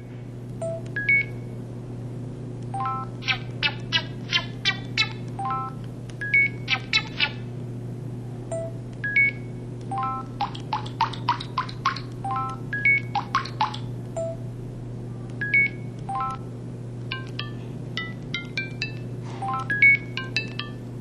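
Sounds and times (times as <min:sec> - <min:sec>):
steady low hum: 0:00.0 - 0:21.0
phone beeping tune: 0:17.1 - 0:20.8.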